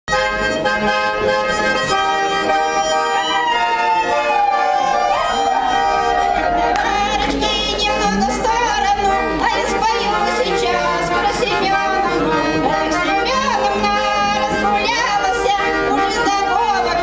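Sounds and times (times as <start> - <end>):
button accordion playing reed chords: 0.1 - 17.0.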